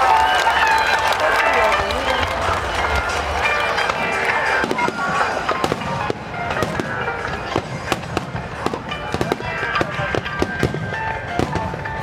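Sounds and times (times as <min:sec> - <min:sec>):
music playing: 0:00.0 - 0:12.0
fireworks cracks and bangs: 0:01.8 - 0:12.0.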